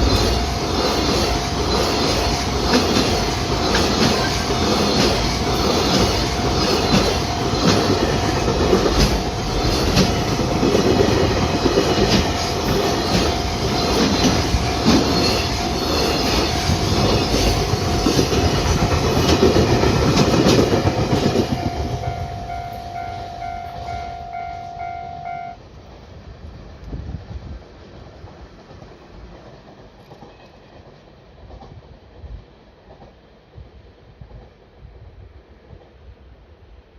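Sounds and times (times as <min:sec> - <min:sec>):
train wheels clattering: 0:00.0 - 0:24.6
crossing warning signal ringing: 0:00.0 - 0:25.6.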